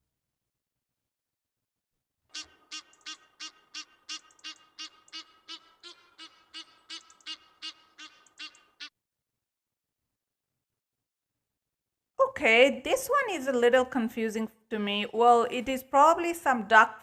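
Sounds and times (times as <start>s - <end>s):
goose honking: 2.3s - 8.9s.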